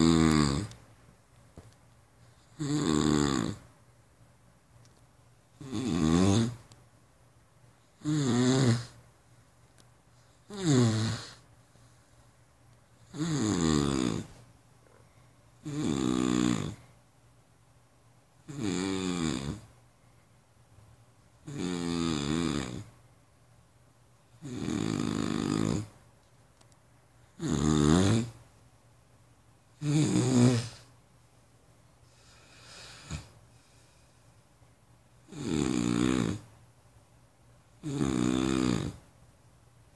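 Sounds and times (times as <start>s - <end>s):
person snoring: 0.0s - 0.8s, 2.5s - 3.6s, 5.6s - 6.6s, 8.0s - 9.0s, 10.4s - 11.4s, 13.1s - 14.4s, 15.6s - 16.8s, 18.5s - 19.7s, 21.5s - 22.9s, 24.4s - 25.9s, 27.4s - 28.4s, 29.8s - 30.9s, 35.3s - 36.4s, 37.8s - 39.0s.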